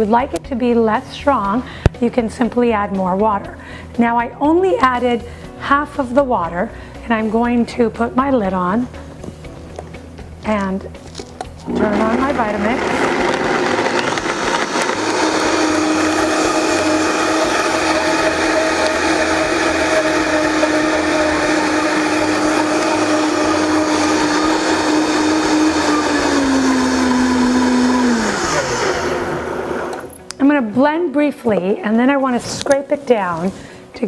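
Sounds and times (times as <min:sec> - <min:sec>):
blender motor running: 0:11.7 - 0:30.1.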